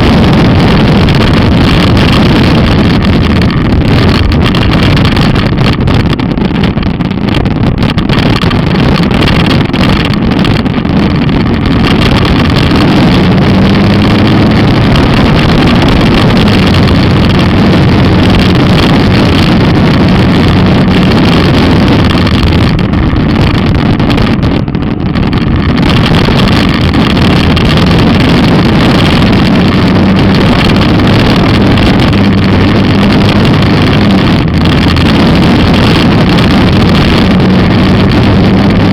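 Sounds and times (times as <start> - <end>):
motorcycle engine running: 0.0 - 38.9
wind buffeting microphone: 0.0 - 38.9.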